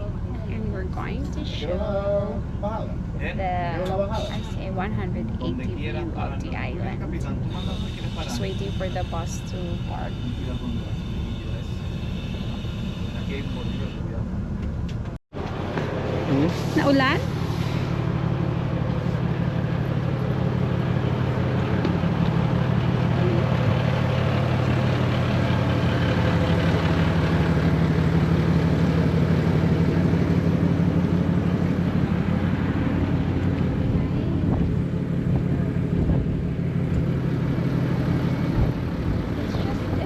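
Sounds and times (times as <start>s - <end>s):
diesel engine droning: 0.0s - 40.0s.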